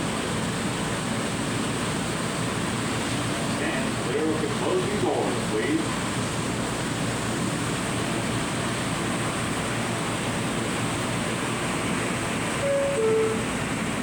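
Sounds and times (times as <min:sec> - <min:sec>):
rushing noise inside subway car: 0:00.0 - 0:14.0
door chime: 0:12.6 - 0:13.5.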